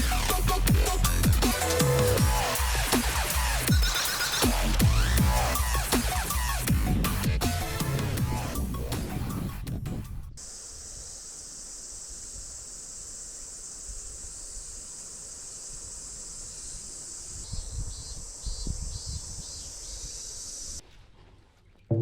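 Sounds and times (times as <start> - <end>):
insects buzzing drone: 0.0 - 6.7, 10.4 - 20.8
pulsing insect call: 0.0 - 6.7, 10.4 - 20.8.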